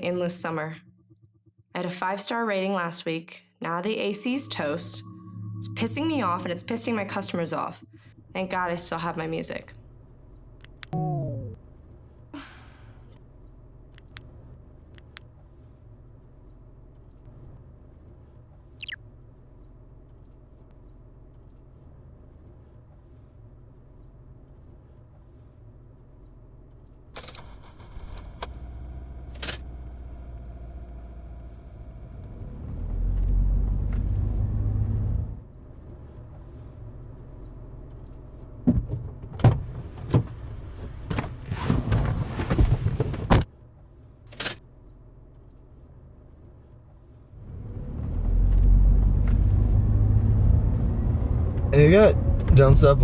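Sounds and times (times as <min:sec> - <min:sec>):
low rumble: 0:00.0 - 0:02.9, 0:03.9 - 0:11.7
car rumbling: 0:27.7 - 0:41.9, 0:47.1 - 0:53.0.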